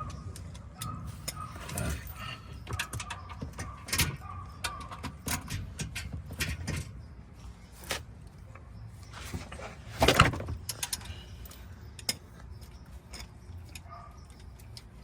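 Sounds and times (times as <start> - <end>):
tools clicking and knocking: 0.0 - 7.1, 9.4 - 15.0.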